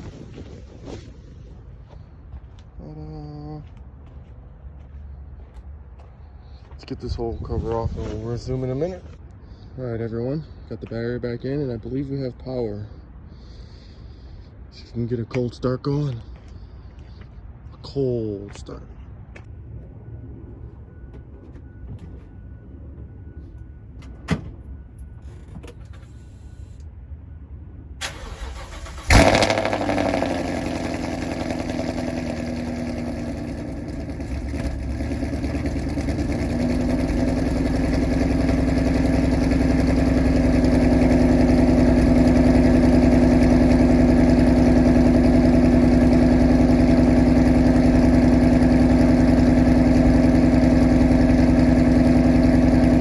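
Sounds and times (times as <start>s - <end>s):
car engine starting and idling: 7.1s - 9.2s, 28.0s - 53.0s.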